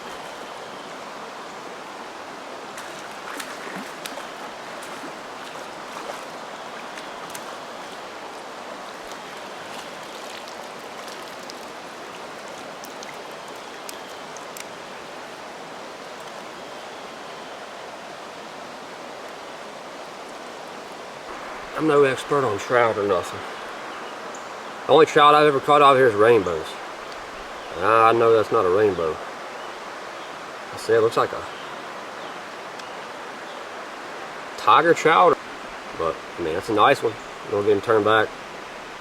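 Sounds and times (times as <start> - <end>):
creek water rushing: 0.0 - 39.0
faint clicks: 12.4 - 14.8, 32.7 - 32.9.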